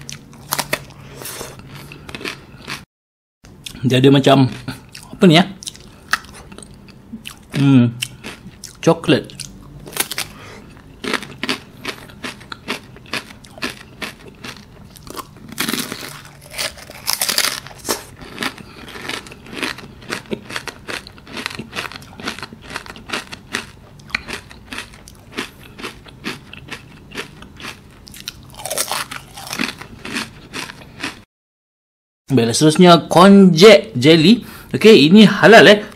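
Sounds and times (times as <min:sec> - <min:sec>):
crunching on wafer cone: 0:00.1 - 0:02.8, 0:07.3 - 0:31.2.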